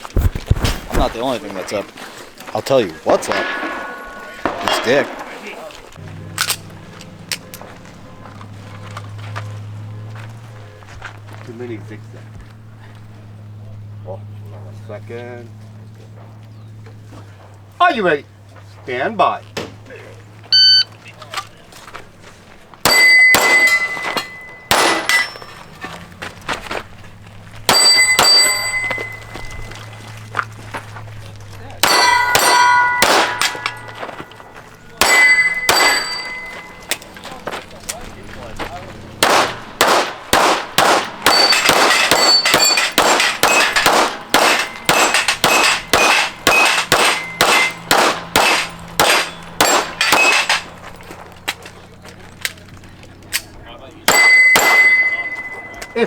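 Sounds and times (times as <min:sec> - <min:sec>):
steel plate ringing: 0:03.1 - 0:05.9, 0:22.8 - 0:26.0, 0:27.7 - 0:30.1, 0:31.8 - 0:37.1, 0:39.3 - 0:51.0, 0:54.1 - 0:56.0
pistol shots: 0:22.8 - 0:25.6, 0:27.7 - 0:29.4, 0:31.8 - 0:34.4, 0:35.0 - 0:36.8, 0:39.2 - 0:50.8, 0:54.1 - 0:55.8.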